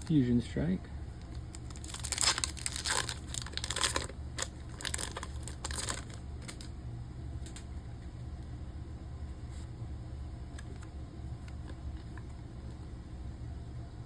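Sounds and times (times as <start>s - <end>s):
foil wrapper tearing and crinkling: 1.2s - 6.7s.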